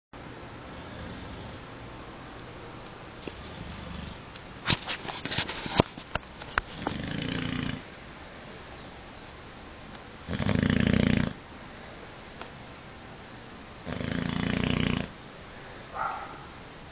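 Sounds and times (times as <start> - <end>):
dog snoring: 0.7 - 1.6, 3.3 - 4.2, 6.8 - 7.8, 10.2 - 11.4, 13.8 - 15.1.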